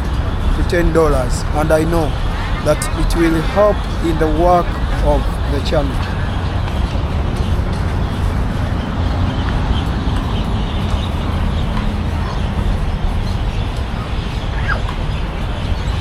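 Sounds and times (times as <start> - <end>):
low city rumble: 0.0 - 16.0.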